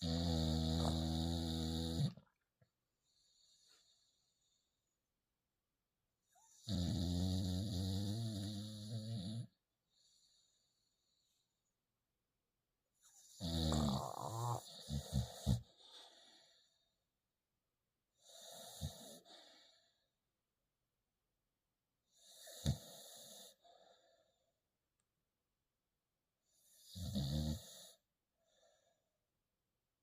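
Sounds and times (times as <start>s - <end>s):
puppy snoring: 0.0s - 2.3s, 6.4s - 9.6s, 13.0s - 16.4s, 18.2s - 19.8s, 22.1s - 23.6s, 26.6s - 28.0s.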